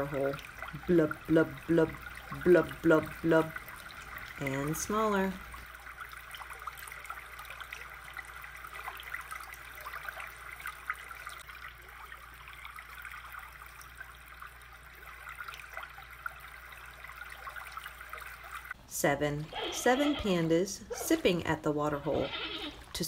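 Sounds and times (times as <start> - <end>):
water trickling and babbling: 0.0 - 23.0.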